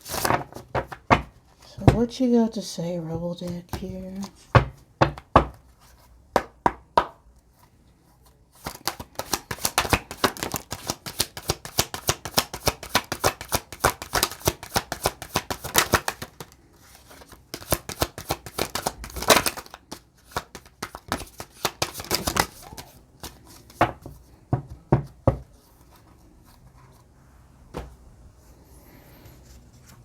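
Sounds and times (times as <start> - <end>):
cards being shuffled: 0.0 - 2.0, 8.5 - 24.3.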